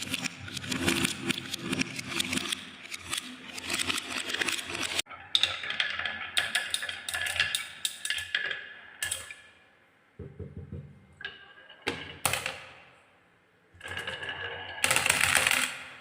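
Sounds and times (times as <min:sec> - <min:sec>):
marbles clicking down marble run: 0:00.0 - 0:09.4, 0:13.8 - 0:16.0.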